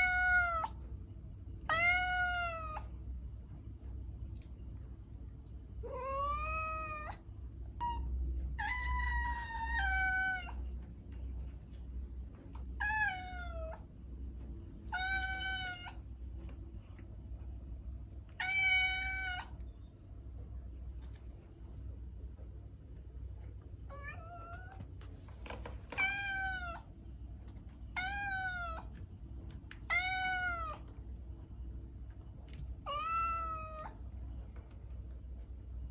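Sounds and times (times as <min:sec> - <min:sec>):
cat meowing: 0:00.0 - 0:00.8, 0:01.7 - 0:02.9, 0:05.8 - 0:07.2, 0:07.8 - 0:10.6, 0:12.8 - 0:13.8, 0:14.9 - 0:16.0, 0:18.3 - 0:19.6, 0:23.9 - 0:24.8, 0:25.9 - 0:26.9, 0:27.9 - 0:28.9, 0:29.8 - 0:30.9, 0:32.8 - 0:34.0.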